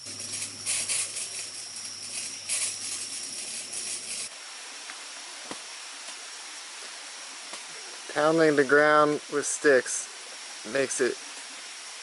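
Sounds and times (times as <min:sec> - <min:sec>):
low hum: 0:00.0 - 0:04.3
rustling bursts: 0:00.0 - 0:04.3
insect drone: 0:00.0 - 0:12.0.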